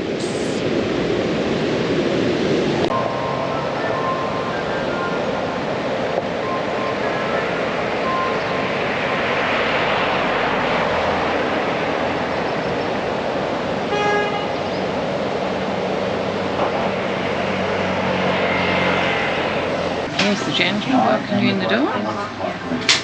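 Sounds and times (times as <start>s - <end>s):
low engine hum: 0.0s - 23.0s
street traffic noise: 0.0s - 23.0s
vehicle horn toot: 13.9s - 14.7s.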